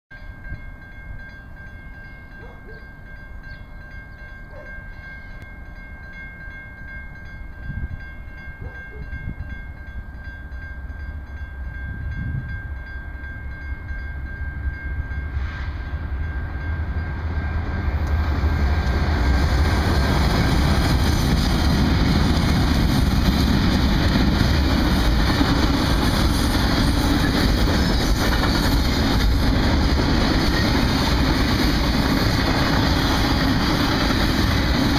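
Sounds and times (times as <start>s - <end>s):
train wheel and rail noise: 0.2s - 34.9s
locomotive rumble: 15.3s - 34.9s.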